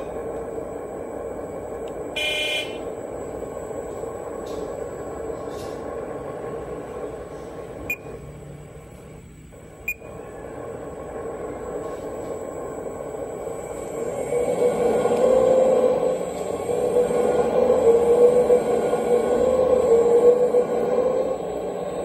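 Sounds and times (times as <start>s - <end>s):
model excavator running: 0.0s - 22.0s
short loud beep: 2.2s - 2.8s.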